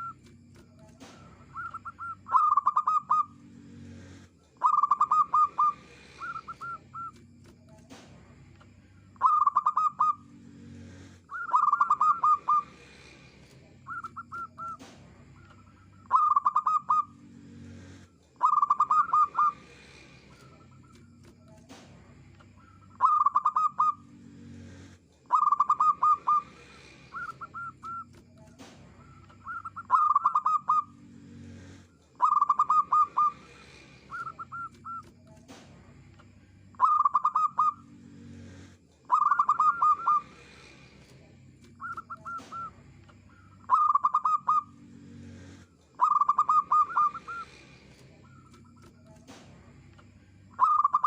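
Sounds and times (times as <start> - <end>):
dove cooing: 0.9 - 7.2, 9.2 - 13.1, 13.9 - 17.2, 17.8 - 21.4, 22.6 - 24.2, 25.2 - 31.0, 31.6 - 35.6, 36.8 - 38.0, 39.0 - 40.7, 41.8 - 44.8, 45.4 - 49.4, 50.5 - 51.0.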